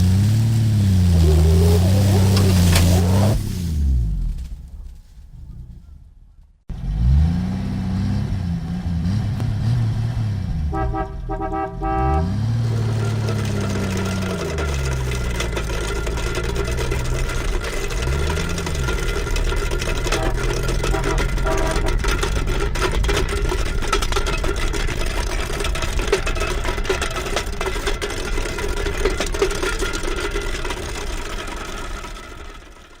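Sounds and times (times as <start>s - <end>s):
car engine revving: 0.0s - 4.9s, 6.7s - 32.8s
car horn beeps: 10.7s - 12.4s, 20.1s - 22.0s.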